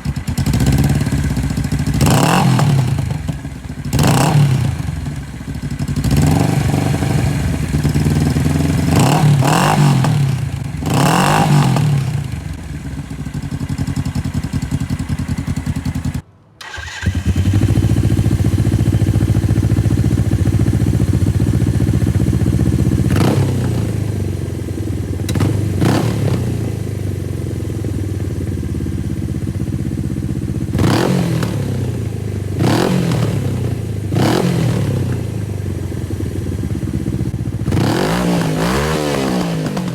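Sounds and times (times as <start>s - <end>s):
motorcycle engine idling and revving: 0.0s - 39.9s.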